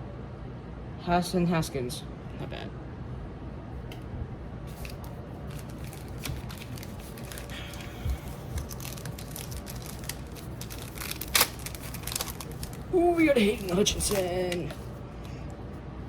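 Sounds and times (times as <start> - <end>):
foil wrapper crinkling and tearing: 4.8 - 15.0.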